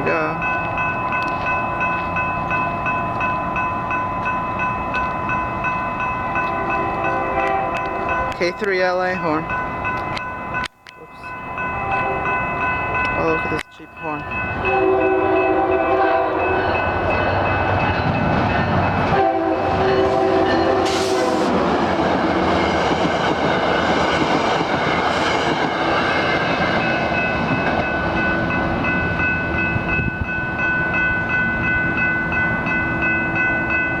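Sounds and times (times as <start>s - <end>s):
steady high ringing tone: 0.0s - 20.9s, 25.8s - 34.0s
train rumble and wheel clatter: 0.0s - 34.0s
locomotive horn blast: 6.6s - 8.0s, 14.6s - 16.8s, 19.1s - 21.6s.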